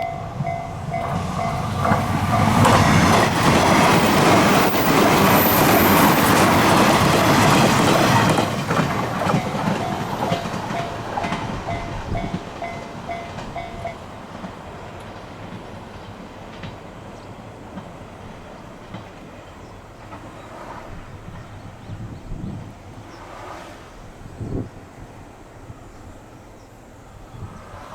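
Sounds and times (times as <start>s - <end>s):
crossing warning bell dinging: 0.0s - 15.8s
train wheels clacking over rail joints: 0.0s - 21.6s.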